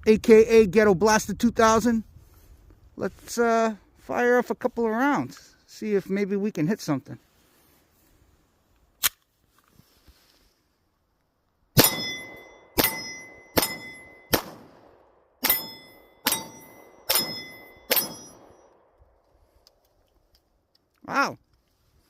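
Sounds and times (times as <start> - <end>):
metallic ring of steel target: 11.8 - 14.7, 15.4 - 18.8
pistol shots: 11.8 - 18.9.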